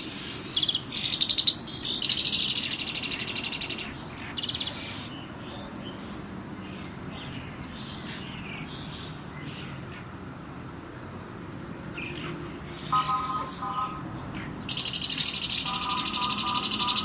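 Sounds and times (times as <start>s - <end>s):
starling singing: 0.0s - 5.3s, 14.6s - 17.0s
bird call of steady tones: 0.0s - 10.2s, 11.9s - 17.0s.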